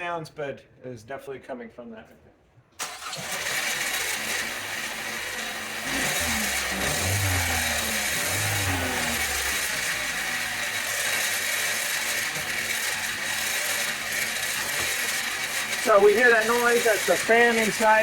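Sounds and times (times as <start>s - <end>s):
turbocharger hissing: 2.9s - 18.0s
car engine revving: 4.0s - 13.3s.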